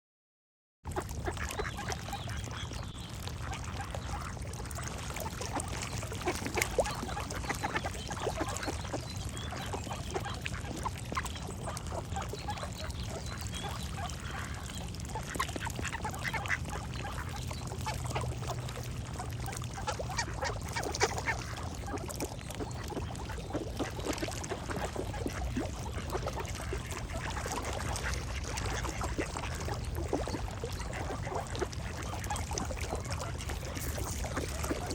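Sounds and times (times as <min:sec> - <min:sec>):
ducks quacking: 0:00.9 - 0:34.9
songbirds singing: 0:01.3 - 0:03.5, 0:05.9 - 0:18.7.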